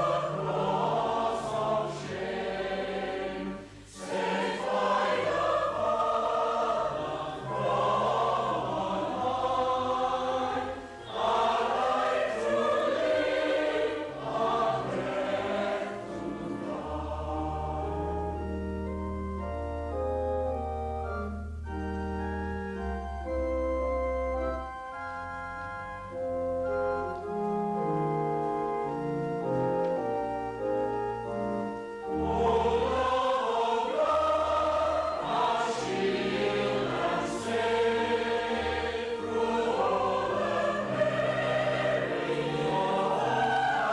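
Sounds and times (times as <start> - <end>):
choir singing a hymn: 0.0 - 19.0, 28.7 - 43.9
organ playing: 0.0 - 43.9.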